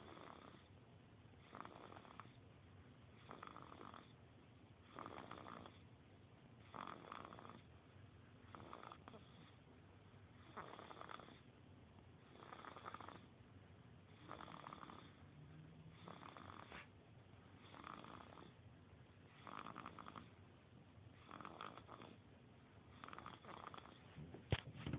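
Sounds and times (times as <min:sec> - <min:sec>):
baby snoring softly: 0:00.0 - 0:00.8, 0:01.4 - 0:02.5, 0:03.1 - 0:04.2, 0:04.8 - 0:05.9, 0:06.6 - 0:07.7, 0:08.4 - 0:09.6, 0:10.3 - 0:11.6, 0:12.2 - 0:13.4, 0:14.1 - 0:18.6, 0:19.3 - 0:20.4, 0:21.1 - 0:24.1.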